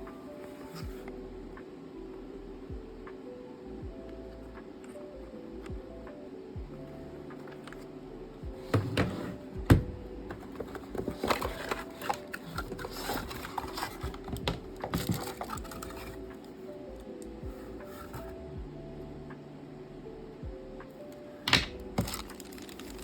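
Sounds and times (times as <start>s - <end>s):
faint background music: 0.0s - 23.0s
hard plastic parts clicking: 8.7s - 18.3s, 21.4s - 23.0s.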